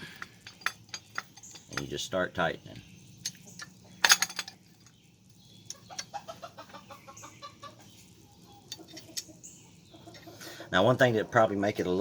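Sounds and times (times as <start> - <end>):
chickens clucking: 4.6 - 12.0.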